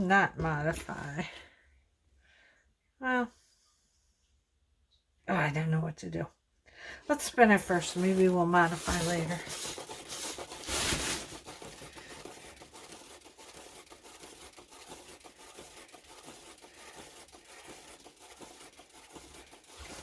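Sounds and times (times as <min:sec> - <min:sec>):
crackly rattle of spinning turntable: 0:07.2 - 0:20.0.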